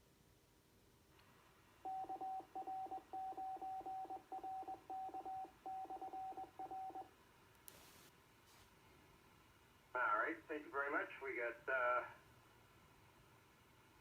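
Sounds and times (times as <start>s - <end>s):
morse code beeps: 1.9s - 7.1s
radio hiss: 7.7s - 8.6s.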